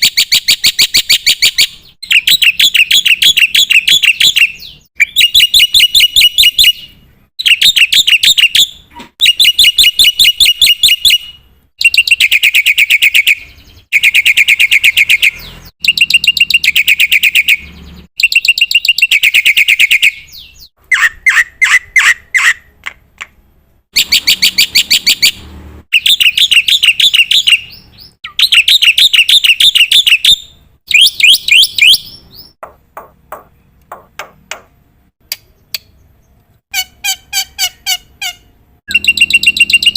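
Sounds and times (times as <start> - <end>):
starling chattering song: 0.0 - 23.4, 36.7 - 39.9.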